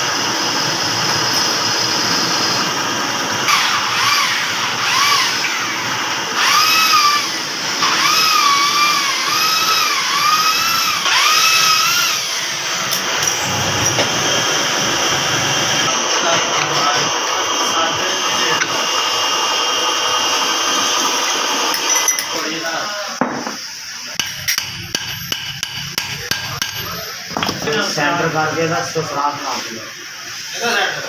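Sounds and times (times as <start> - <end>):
steady shop hum: 0.0 - 31.0
power tool motor whining: 3.5 - 21.8.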